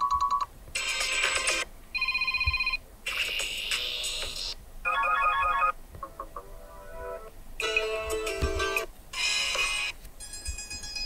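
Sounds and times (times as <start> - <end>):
electronic ringtone melodies: 4.9 - 11.0.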